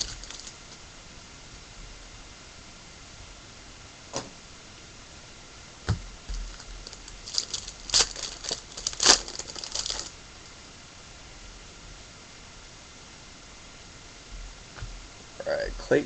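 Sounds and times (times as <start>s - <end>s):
foil wrapper tearing and crinkling: 0.0s - 0.6s, 6.4s - 10.2s.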